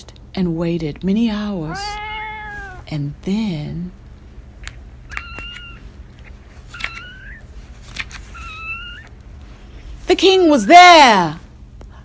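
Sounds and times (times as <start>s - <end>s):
cat mewing: 1.7s - 2.9s, 5.1s - 5.9s, 6.7s - 7.5s, 8.3s - 9.1s.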